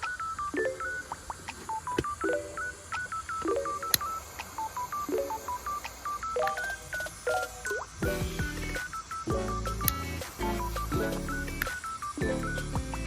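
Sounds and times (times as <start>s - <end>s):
bright electronic melody: 0.0s - 13.0s
low electronic chords: 8.0s - 13.0s.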